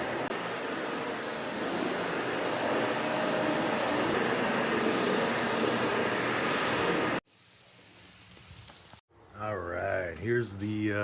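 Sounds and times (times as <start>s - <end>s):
vacuum cleaner running: 0.0s - 7.2s.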